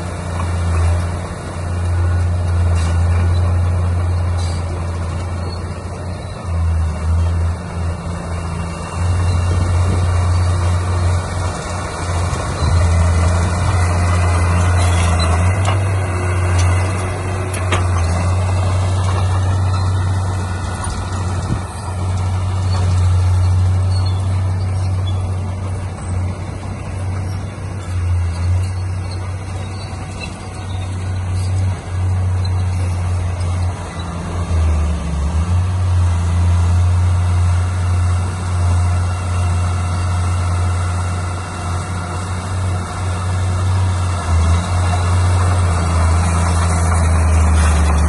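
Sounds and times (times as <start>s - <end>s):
diesel machinery engine drone: 0.0s - 48.0s
brief squeal: 22.7s - 25.3s.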